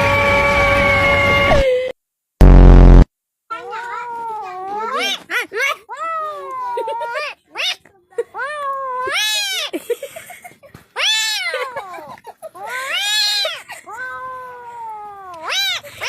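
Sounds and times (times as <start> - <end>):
cat meowing: 8.4 - 9.7, 11.0 - 16.0.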